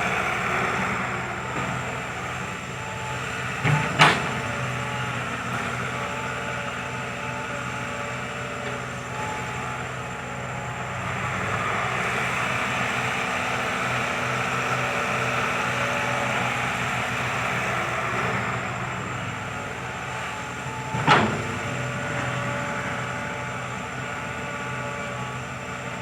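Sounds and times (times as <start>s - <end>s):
diesel engine of heavy machinery: 0.0s - 26.0s.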